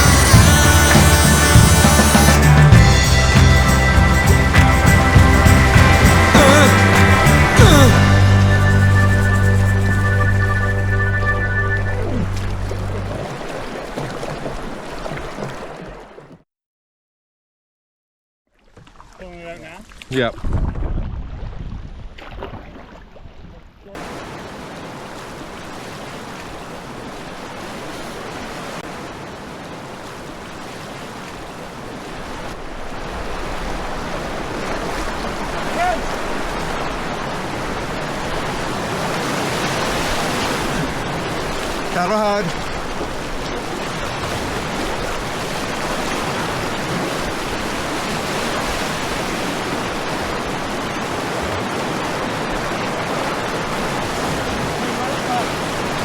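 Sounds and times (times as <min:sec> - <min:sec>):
river rapids rushing: 0:00.0 - 0:14.2, 0:32.9 - 0:56.0.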